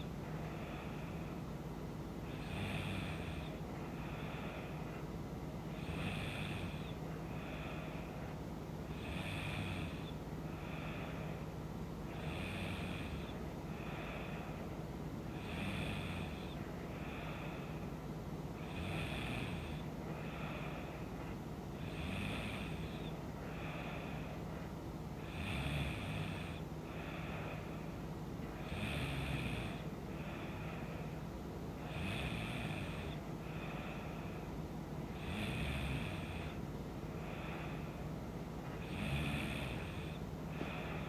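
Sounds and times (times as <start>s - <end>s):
woman snoring: 2.3s - 5.0s, 5.8s - 8.2s, 8.9s - 11.3s, 12.1s - 14.7s, 15.3s - 17.8s, 18.6s - 20.9s, 21.8s - 24.4s, 25.2s - 27.8s, 28.5s - 30.9s, 31.8s - 34.3s, 35.1s - 36.6s, 38.8s - 41.0s.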